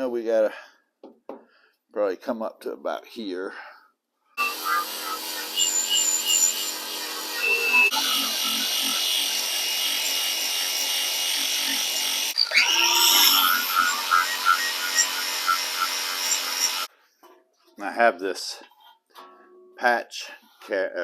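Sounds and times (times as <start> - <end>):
power tool abrading steel: 4.4 - 16.9.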